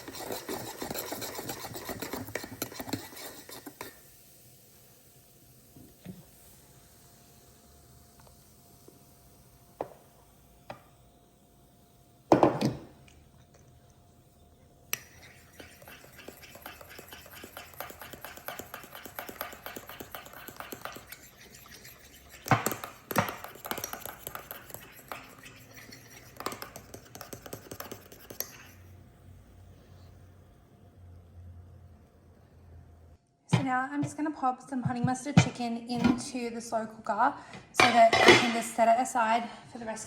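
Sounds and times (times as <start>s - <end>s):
dishes and utensils clinking: 37.8s - 38.7s.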